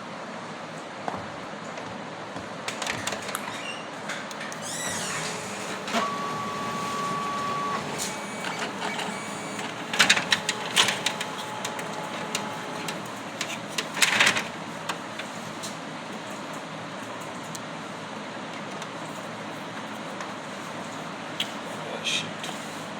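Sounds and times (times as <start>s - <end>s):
printer whine: 4.6s - 15.4s
printer mechanism clicking and rattling: 7.0s - 14.6s.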